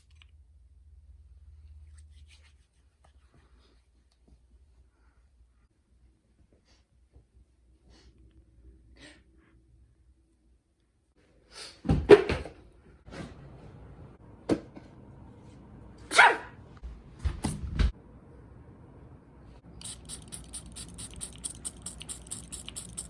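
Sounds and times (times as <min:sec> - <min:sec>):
low thumps: 0:16.8 - 0:18.0.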